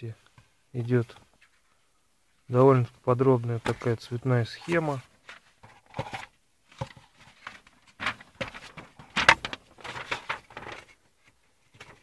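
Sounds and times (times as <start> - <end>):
paper rustling: 3.5 - 4.0, 4.6 - 12.0.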